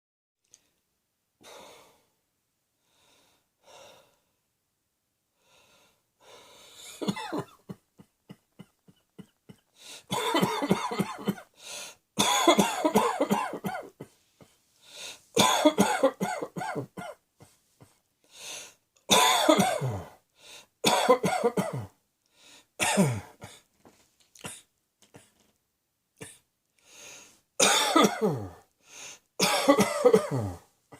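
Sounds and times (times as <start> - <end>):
person gasping: 1.4 - 2.2, 2.8 - 4.3, 5.4 - 7.0, 9.6 - 10.2, 11.5 - 12.0, 14.4 - 15.4, 17.4 - 18.8, 19.8 - 20.8, 22.3 - 23.7, 26.8 - 27.4, 28.3 - 29.3
person coughing: 6.8 - 11.5, 12.2 - 14.6, 15.4 - 17.2, 19.1 - 20.2, 20.8 - 22.0, 22.8 - 23.6, 27.6 - 28.6, 29.4 - 30.7.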